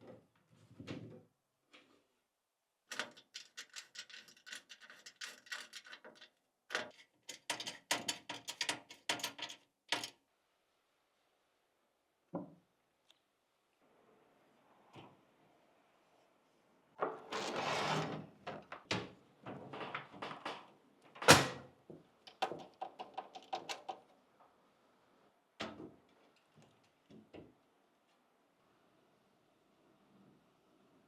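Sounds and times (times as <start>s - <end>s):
hardware scraping slide: 17.3s - 18.2s.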